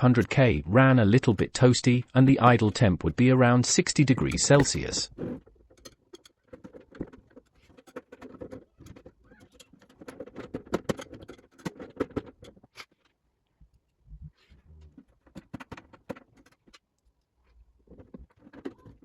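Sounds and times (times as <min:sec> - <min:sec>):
small hard parts clicking and tapping: 0:04.0 - 0:13.2, 0:14.8 - 0:19.0.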